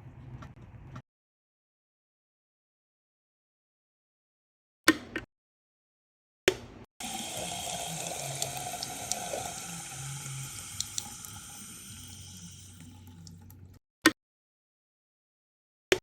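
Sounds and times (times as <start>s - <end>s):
water running: 7.0s - 13.8s.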